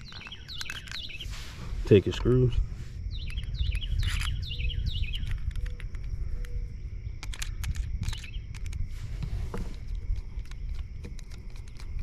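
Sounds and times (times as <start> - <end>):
small parts clicking: 0.0 - 1.1, 5.2 - 6.5, 7.2 - 8.8, 10.0 - 12.0
small birds chirping: 0.0 - 9.2, 9.8 - 12.0
steady low rumble: 0.0 - 12.0.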